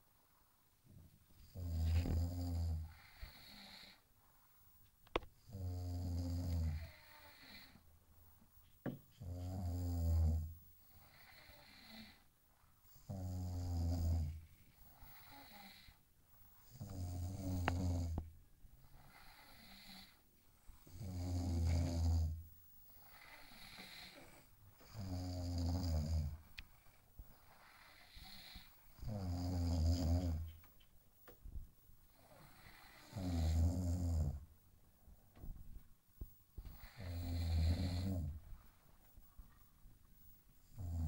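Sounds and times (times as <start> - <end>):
person snoring loudly: 24.9 - 26.4, 27.6 - 30.4, 32.6 - 34.4, 36.8 - 38.4.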